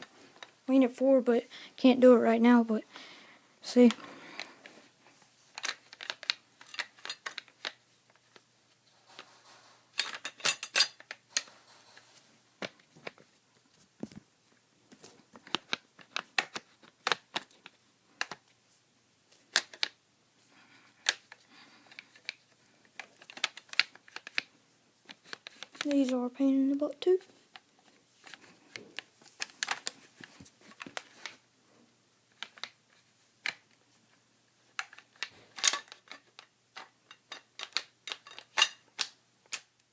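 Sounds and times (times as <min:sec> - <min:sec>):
metal clicks and knocks of gun parts: 0:05.6 - 0:07.8, 0:10.0 - 0:11.5, 0:21.0 - 0:24.5, 0:34.7 - 0:39.7.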